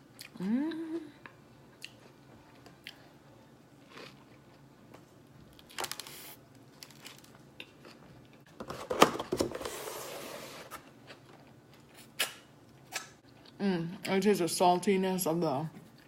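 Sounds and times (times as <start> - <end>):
crackly eating noises: 0.0 - 8.6, 10.8 - 14.2.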